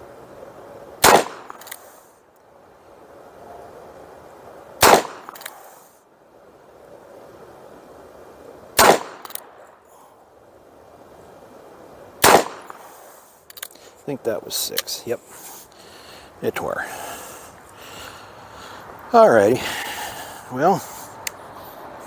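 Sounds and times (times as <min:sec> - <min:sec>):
revolver gunshots: 0:01.0 - 0:01.8, 0:04.8 - 0:05.6, 0:08.8 - 0:09.4, 0:12.2 - 0:12.9.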